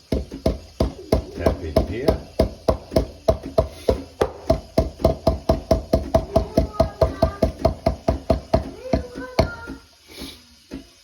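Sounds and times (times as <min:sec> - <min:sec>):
portafilter knocking against knock box: 0:00.0 - 0:09.8.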